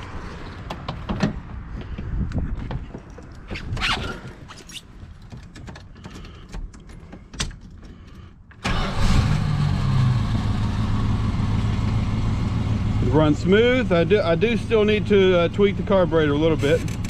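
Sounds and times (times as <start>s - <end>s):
car engine starting and idling: 7.9s - 17.0s.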